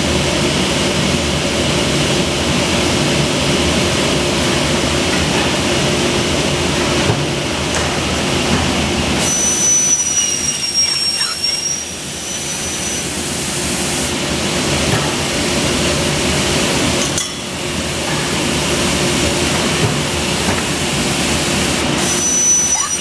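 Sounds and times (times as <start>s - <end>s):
circular saw running: 9.0s - 19.5s, 20.2s - 23.0s
high thin whine: 9.2s - 14.6s.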